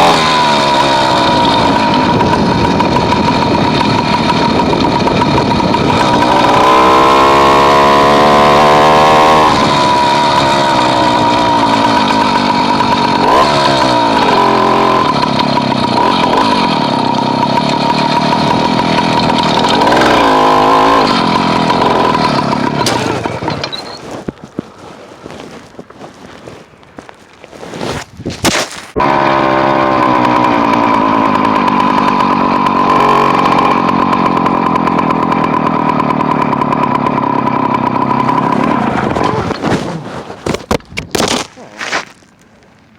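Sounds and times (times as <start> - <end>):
small engine revving: 0.0 - 24.2, 28.9 - 40.8.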